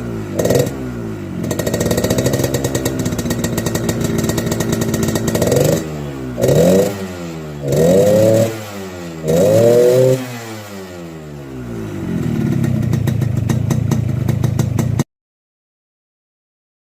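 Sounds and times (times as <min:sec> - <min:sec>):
two-stroke motorcycle engine revving: 0:00.0 - 0:15.0.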